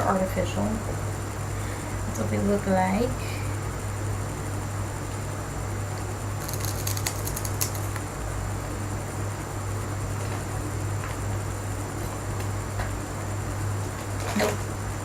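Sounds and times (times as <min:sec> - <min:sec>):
low room hum: 0:00.0 - 0:15.0
crisp crackling: 0:06.4 - 0:08.1.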